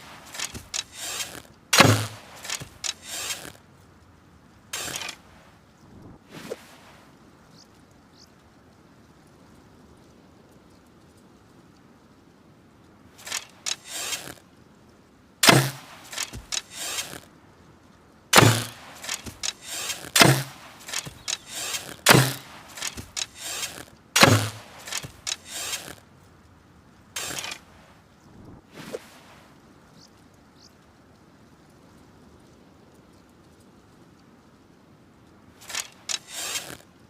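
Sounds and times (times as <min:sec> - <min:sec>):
bow handling clicks: 0:00.0 - 0:03.6, 0:04.8 - 0:05.2, 0:15.4 - 0:17.2, 0:18.4 - 0:26.0, 0:27.2 - 0:27.6, 0:35.6 - 0:36.8.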